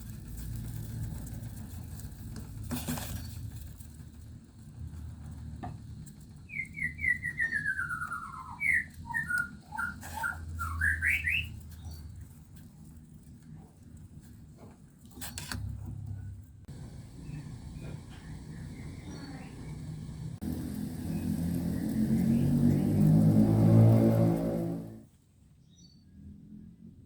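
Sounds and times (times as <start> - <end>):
bird singing: 6.5 - 12.0.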